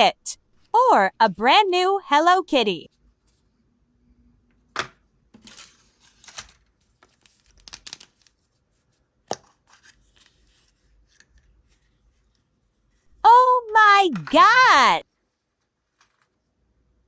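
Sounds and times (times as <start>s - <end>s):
packaging tearing and crinkling: 6.1s - 8.4s.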